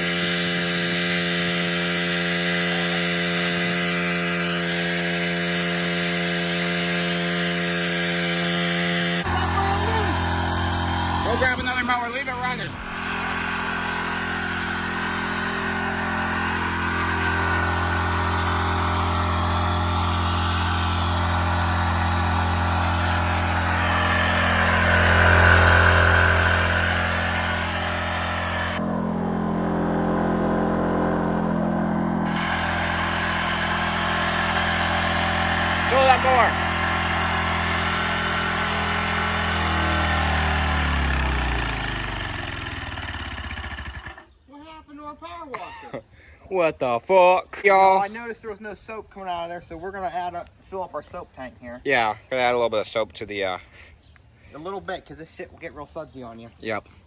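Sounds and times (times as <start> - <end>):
pressure washer engine running: 0.0 - 44.4.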